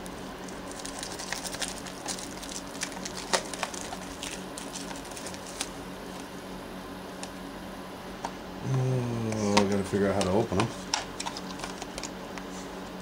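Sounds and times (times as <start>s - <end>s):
steady low hum: 0.0s - 13.0s
card pack crinkling: 0.1s - 6.3s.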